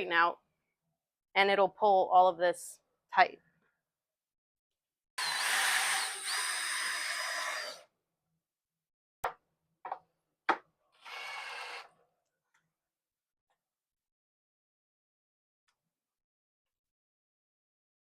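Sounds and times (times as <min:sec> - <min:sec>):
power drill driving screws: 0:05.2 - 0:07.8, 0:11.0 - 0:11.9.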